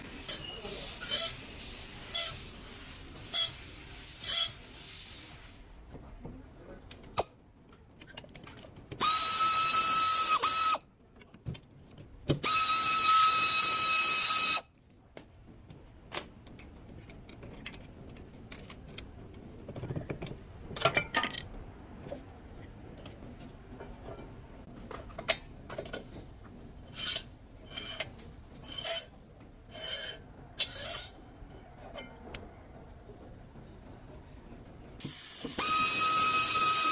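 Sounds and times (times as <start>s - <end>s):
air tool whining: 9.0s - 10.8s, 35.0s - 36.9s.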